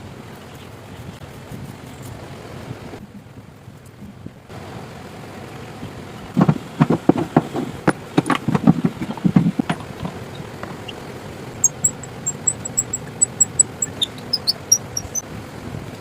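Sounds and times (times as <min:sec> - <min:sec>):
rapid sharp knocks: 0:06.4 - 0:10.9, 0:11.6 - 0:15.2.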